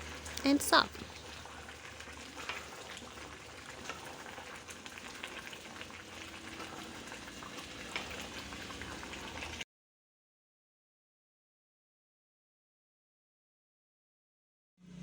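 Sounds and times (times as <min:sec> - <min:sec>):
stew simmering with pops: 0:00.0 - 0:09.6.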